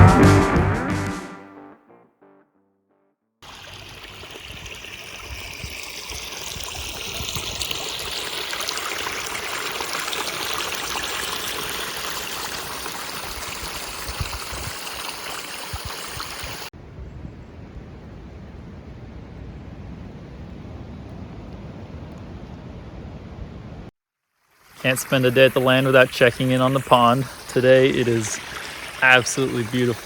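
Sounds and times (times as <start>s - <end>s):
stream water rushing: 3.4s - 16.7s, 24.6s - 30.0s.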